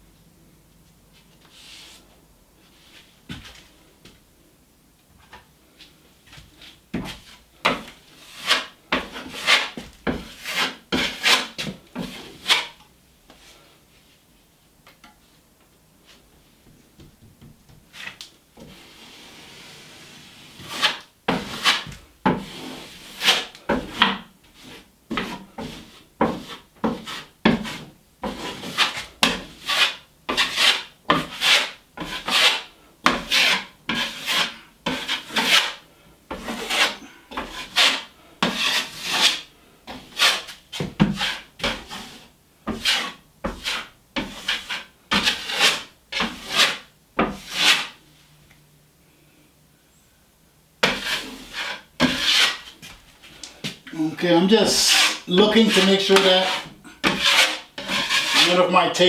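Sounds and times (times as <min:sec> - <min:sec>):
drywall knife scraping compound: 0:07.0 - 0:12.8, 0:17.9 - 0:48.0, 0:50.8 - 0:59.0.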